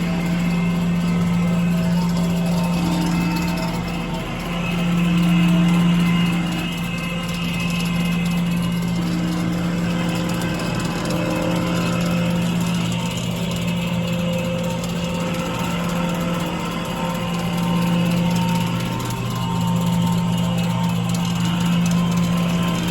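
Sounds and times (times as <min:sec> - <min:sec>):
faint high machine tones: 0:00.0 - 0:22.9
floor scrubber humming: 0:00.0 - 0:22.9.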